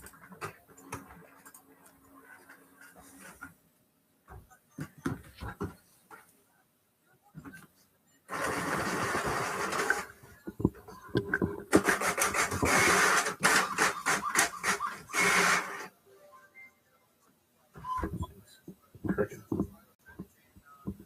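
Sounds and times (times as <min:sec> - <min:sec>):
printer feeding paper: 0:08.3 - 0:10.2, 0:11.7 - 0:15.9
printer chattering clicks: 0:11.7 - 0:15.8.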